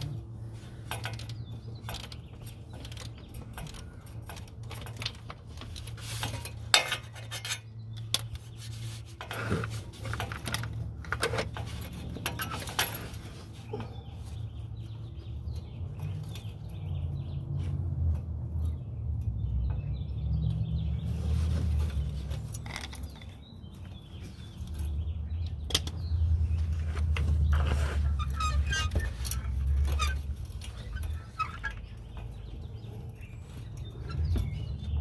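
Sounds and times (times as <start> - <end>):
metal tools clinking on metal: 0.0 - 8.3, 9.2 - 14.2.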